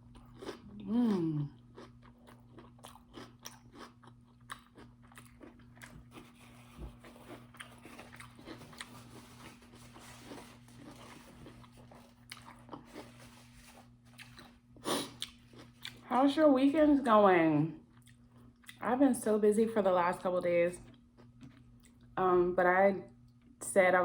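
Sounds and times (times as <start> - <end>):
close-up chewing and crunching: 0.0 - 16.2, 17.8 - 18.8, 20.8 - 22.2.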